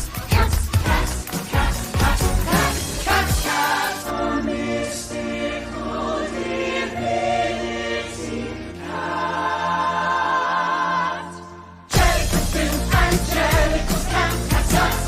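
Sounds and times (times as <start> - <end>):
rhythmic music with heavy beats: 0.0 - 4.1, 11.9 - 15.0
choir singing held chords: 0.3 - 15.0.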